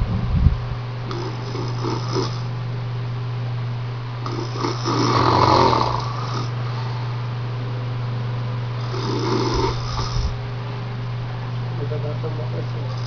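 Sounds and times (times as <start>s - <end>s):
steady low hum: 0.0s - 13.0s
man snoring: 1.1s - 2.5s, 4.2s - 6.6s, 8.8s - 10.4s, 12.8s - 13.0s.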